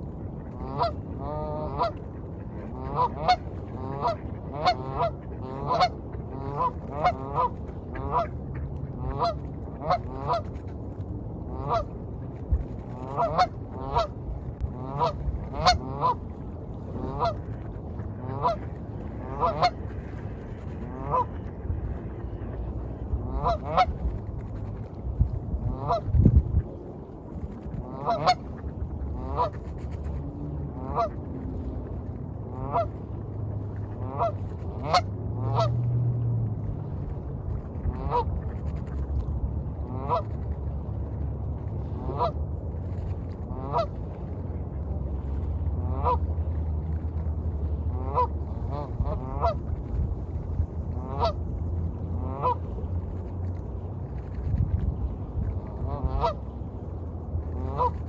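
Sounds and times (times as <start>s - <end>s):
low rumble of waves: 0.0s - 58.0s
waterfowl nasal calls: 0.5s - 2.0s, 2.6s - 8.4s, 9.0s - 10.5s, 11.6s - 11.9s, 13.0s - 14.2s, 14.8s - 16.2s, 17.0s - 17.4s, 18.2s - 19.8s, 20.9s - 21.4s, 23.2s - 24.0s, 25.7s - 26.1s, 27.9s - 29.8s, 30.8s - 31.2s, 32.5s - 32.9s, 34.0s - 35.8s, 37.9s - 38.3s, 39.8s - 40.3s, 42.0s - 42.4s, 43.5s - 43.9s, 45.8s - 46.2s, 47.8s - 49.6s, 50.9s - 51.4s, 52.1s - 52.9s, 55.6s - 56.6s, 57.6s - 58.0s.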